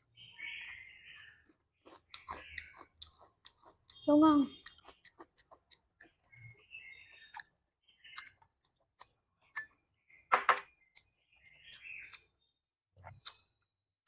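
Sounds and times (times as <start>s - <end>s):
person chewing food: 0.6s - 9.8s.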